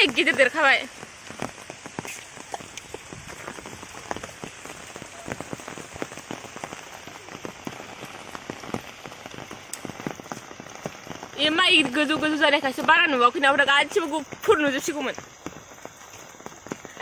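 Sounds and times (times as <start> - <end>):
rain falling: 0.0 - 17.0.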